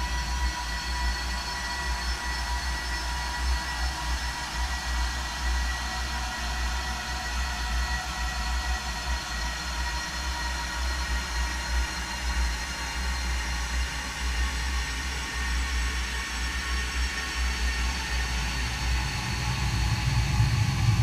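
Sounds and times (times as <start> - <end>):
low rumble: 18.2 - 21.0.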